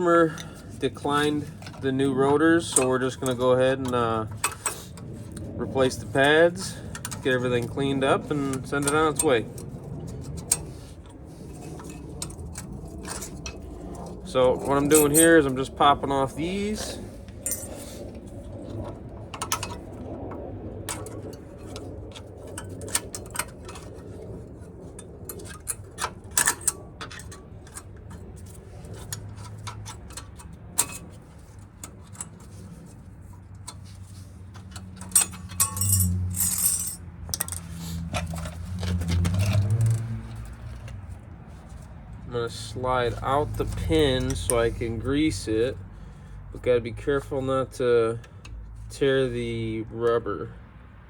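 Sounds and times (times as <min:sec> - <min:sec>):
metal clips clicking and clinking: 0:00.2 - 0:11.1, 0:11.7 - 0:17.9, 0:25.0 - 0:28.2, 0:28.9 - 0:31.2, 0:33.6 - 0:41.0.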